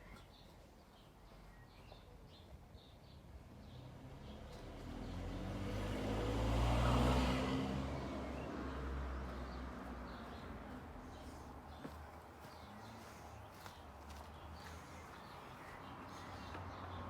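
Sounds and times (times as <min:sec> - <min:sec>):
vehicle driving past: 0:03.7 - 0:11.6.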